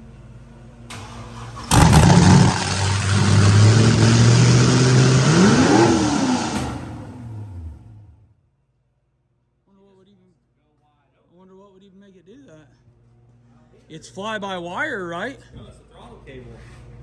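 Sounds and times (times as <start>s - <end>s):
engine racing idle and revving: 1.4s - 8.3s.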